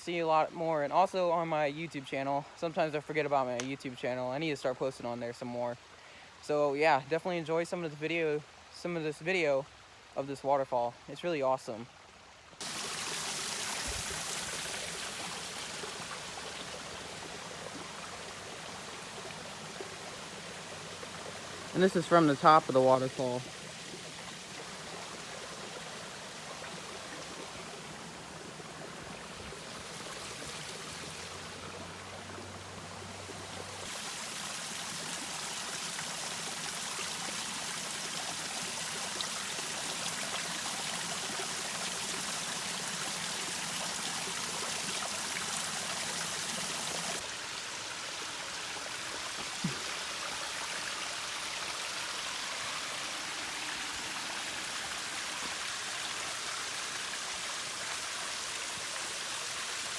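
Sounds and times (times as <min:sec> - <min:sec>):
water rushing over rock: 0:12.6 - 0:47.9.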